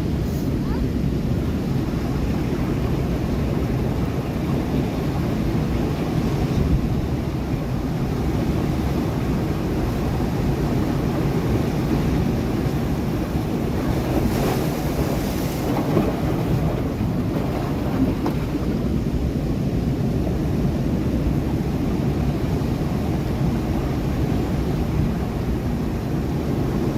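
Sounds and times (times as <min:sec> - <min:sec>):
waves breaking against rocks: 0:01.3 - 0:19.3.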